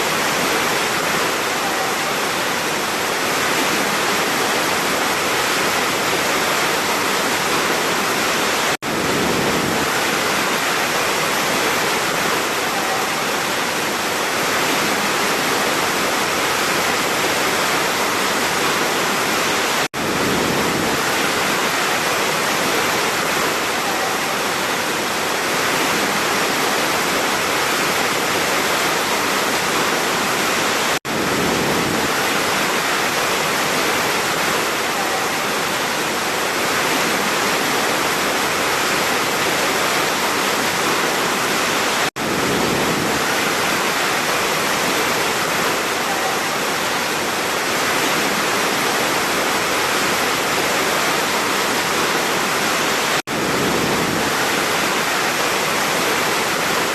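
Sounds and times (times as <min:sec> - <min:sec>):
waterfall roaring: 0:00.0 - 0:56.9.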